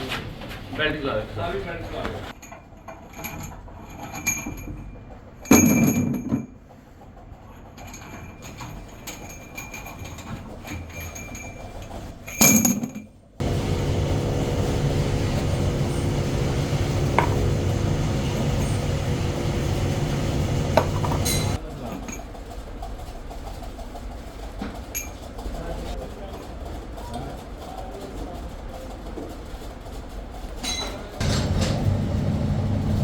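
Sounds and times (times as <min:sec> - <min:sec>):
loud clatter: 0:13.4 - 0:21.6, 0:31.2 - 0:33.0
workshop machine humming: 0:13.4 - 0:21.6, 0:31.2 - 0:33.0.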